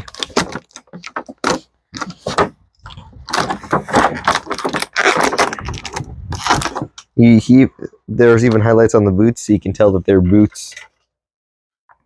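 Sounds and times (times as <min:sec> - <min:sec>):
plastic packaging rustling and clicking: 0:00.0 - 0:07.2.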